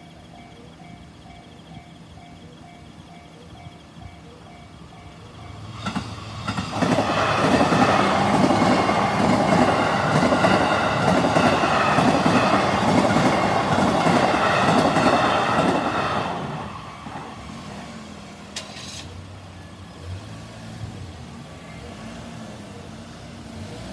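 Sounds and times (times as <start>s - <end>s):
train wheels clattering on rails: 0.0s - 19.1s
crossing alarm bell ringing: 0.0s - 19.7s.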